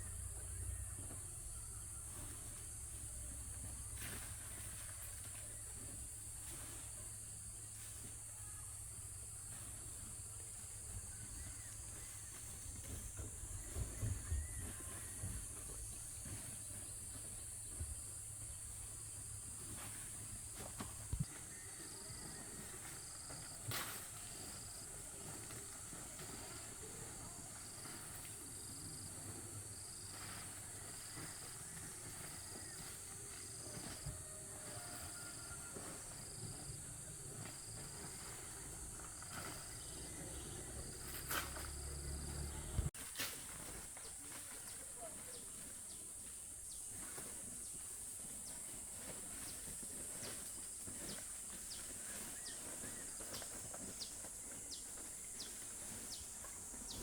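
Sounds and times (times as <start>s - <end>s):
insects buzzing drone: 0.0s - 42.9s.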